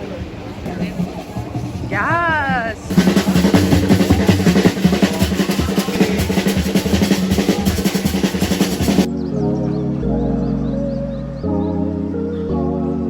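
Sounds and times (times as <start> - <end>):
music with fast drumming: 0.6 - 9.1
calm music with held tones: 9.1 - 13.0.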